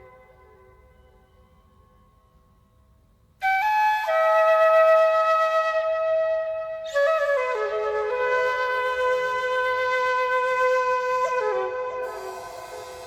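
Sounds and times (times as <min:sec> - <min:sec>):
flute playing long notes: 0:03.4 - 0:13.0.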